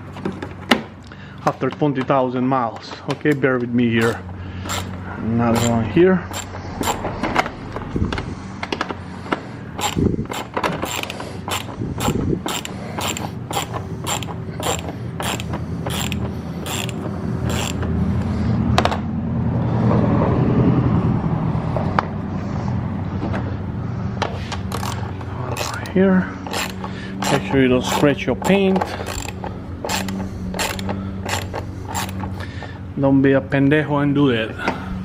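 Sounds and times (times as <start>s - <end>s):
steady low hum: 3.4s - 33.0s
hand ratchet clicking: 4.0s - 8.3s, 9.7s - 17.9s, 24.5s - 32.5s.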